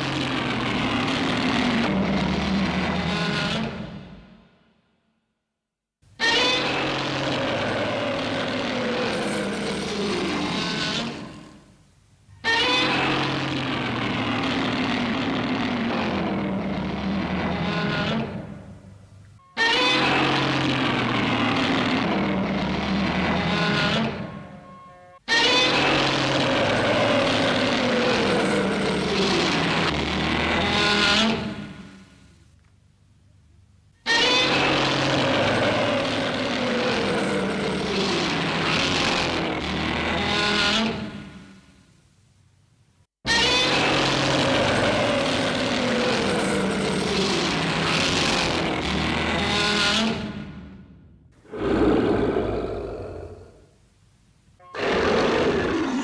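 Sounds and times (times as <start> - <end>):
harsh roar-like creature cry: 6.2 - 11.5, 25.4 - 31.6, 34.2 - 39.8, 43.3 - 49.5, 51.4 - 53.7, 54.7 - 56.0.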